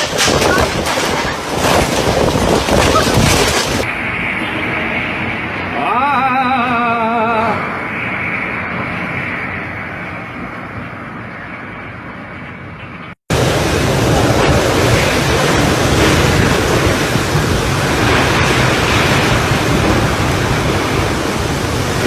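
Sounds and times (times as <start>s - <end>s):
wind blowing against microphone: 0.0s - 5.8s, 13.3s - 22.0s.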